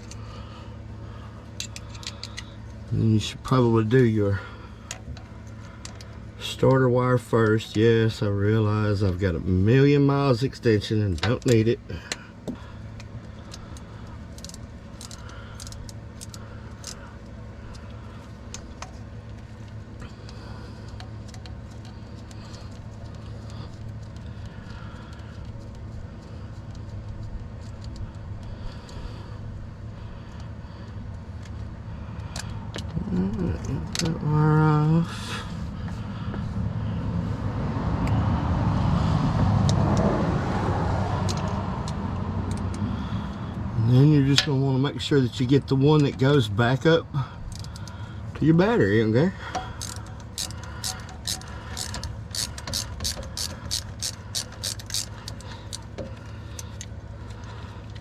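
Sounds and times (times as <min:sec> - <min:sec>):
steady low hum: 0:00.0 - 0:58.0
vehicle engine rumbling: 0:00.0 - 0:58.0
metallic ratchet clicks: 0:49.5 - 0:57.4.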